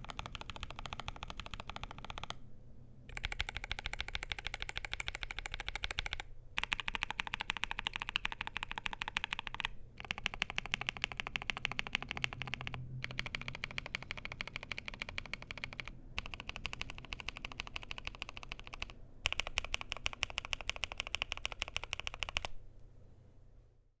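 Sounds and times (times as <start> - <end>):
mechanical keyboard typing: 0.0 - 2.4, 3.1 - 22.6.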